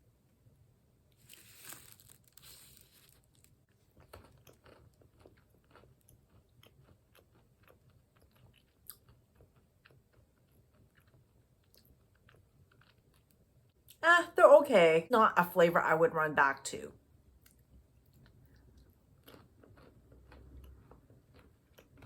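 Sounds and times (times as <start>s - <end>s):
soft hiss: 1.1s - 3.6s
crunching and chewing nuts: 1.1s - 14.0s, 17.4s - 22.0s.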